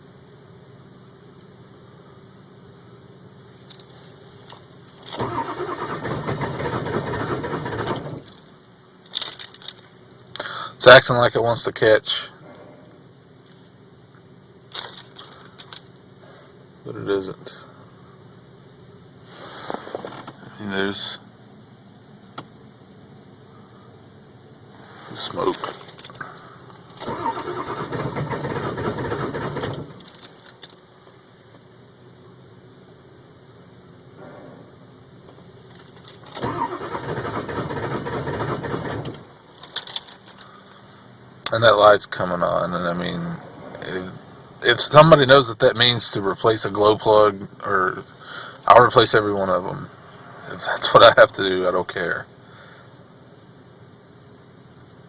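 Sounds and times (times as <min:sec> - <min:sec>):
starter cranking diesel engine: 0:05.0 - 0:08.4, 0:25.2 - 0:30.6, 0:35.8 - 0:40.8.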